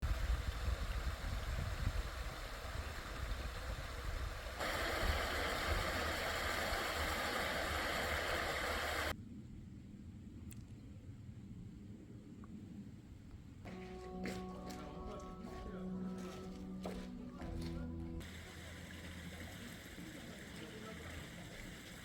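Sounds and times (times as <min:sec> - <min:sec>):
mountain stream rushing: 0:04.4 - 0:09.1.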